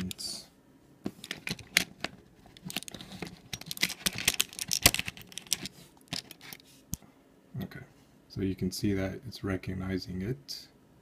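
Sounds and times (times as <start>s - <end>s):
usb device clicking and rattling: 1.2s - 6.6s.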